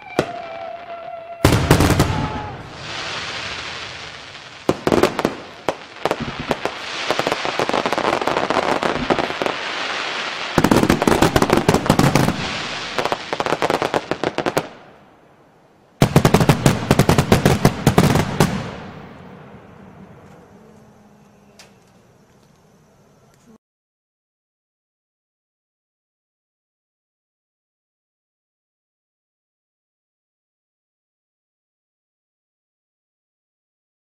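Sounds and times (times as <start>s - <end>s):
firecrackers banging: 0.0s - 14.8s, 16.0s - 20.6s.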